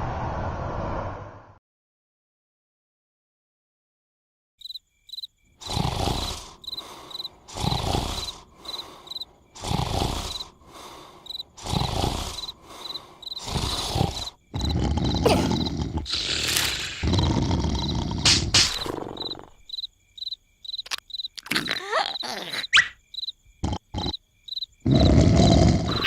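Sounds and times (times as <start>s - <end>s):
crickets chirping: 4.6s - 26.0s
cartoon snoring: 5.6s - 19.6s, 21.4s - 23.0s, 23.6s - 24.2s, 24.8s - 26.0s.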